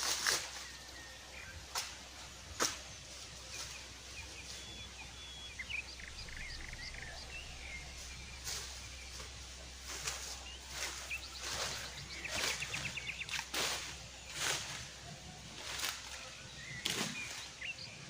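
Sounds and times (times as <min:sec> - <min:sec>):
small birds whistling: 0:00.0 - 0:18.0
bird trill: 0:03.5 - 0:14.8.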